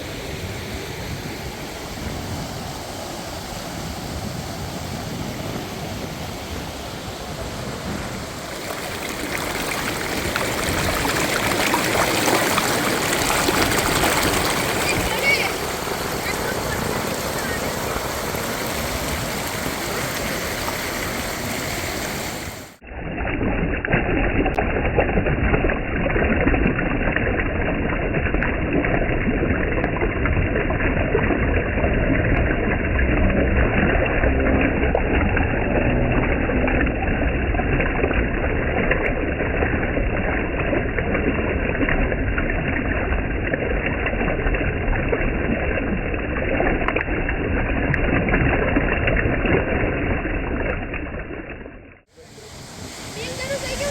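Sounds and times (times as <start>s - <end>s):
river water rushing and gurgling: 0.0s - 22.8s, 46.5s - 53.9s.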